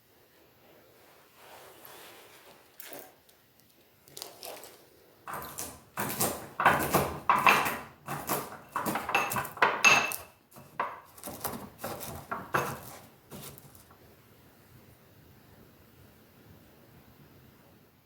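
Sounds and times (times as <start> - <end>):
dishes and cutlery clinking: 5.3 - 13.9.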